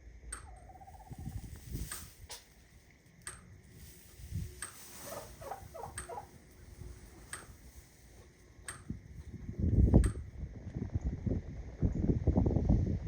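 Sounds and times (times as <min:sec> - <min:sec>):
electric fence charger clicks: 0:07.2 - 0:10.3.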